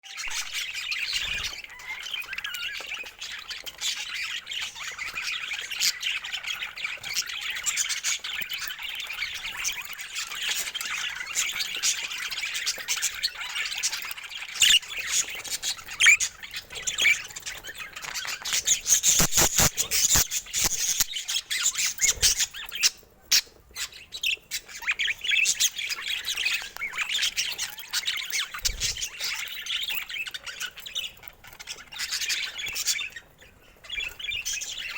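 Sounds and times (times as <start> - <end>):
budgerigars chattering: 0.1 - 34.9.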